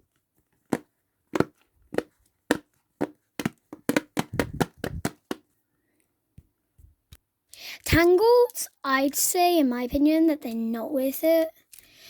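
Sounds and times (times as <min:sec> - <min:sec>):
fidget toy bubbles popping: 0:03.4 - 0:05.4.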